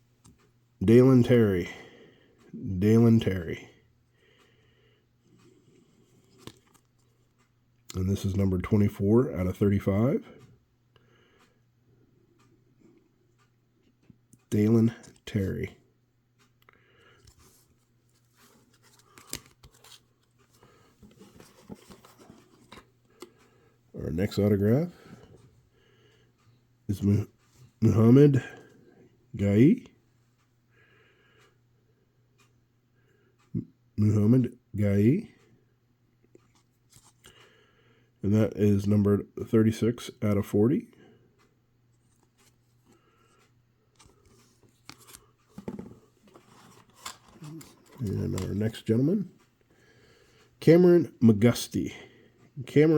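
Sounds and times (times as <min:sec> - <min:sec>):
cards rustling and scraping: 0:05.8 - 0:07.2, 0:17.2 - 0:23.5, 0:36.4 - 0:37.3, 0:41.9 - 0:43.4, 0:44.0 - 0:48.9.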